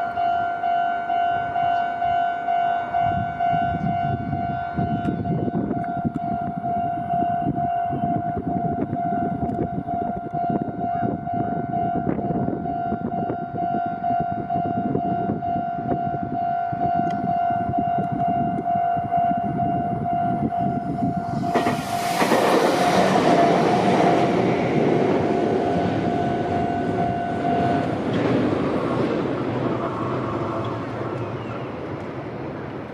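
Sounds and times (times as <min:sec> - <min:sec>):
train rumbling: 0:00.0 - 0:32.9
train rushing past: 0:20.0 - 0:32.9.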